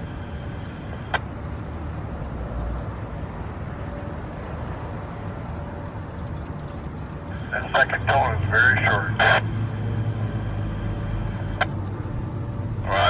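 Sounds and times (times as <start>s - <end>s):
outdoor background rumble: 0.0s - 13.0s.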